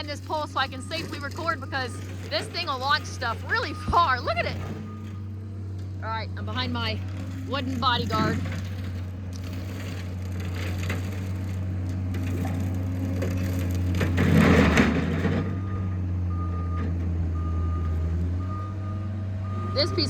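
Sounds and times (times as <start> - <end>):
diesel engine running: 0.0 - 20.0
backup alarm beeping: 0.3 - 5.4, 15.5 - 20.0.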